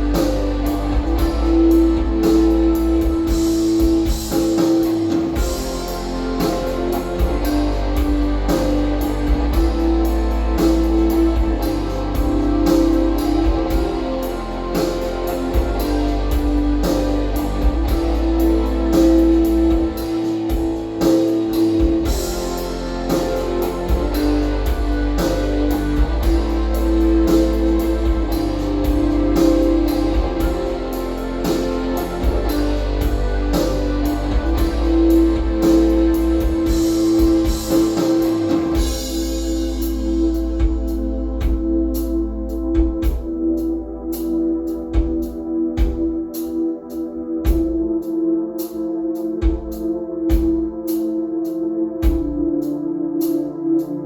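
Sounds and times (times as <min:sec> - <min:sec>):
rock music with guitar and drums: 0:00.0 - 0:43.2.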